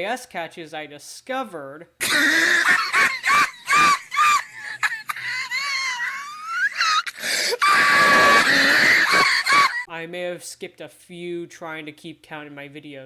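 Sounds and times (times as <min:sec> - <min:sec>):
high-pitched squeaky wheezing: 0:02.0 - 0:09.9.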